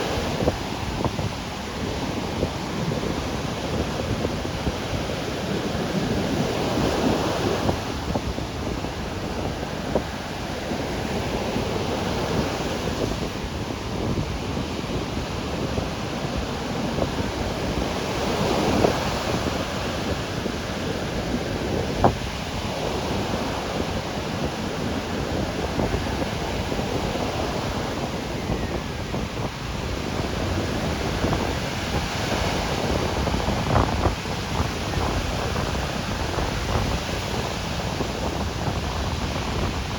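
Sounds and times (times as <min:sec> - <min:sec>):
ocean surf breaking on beach: 0:00.0 - 0:39.9.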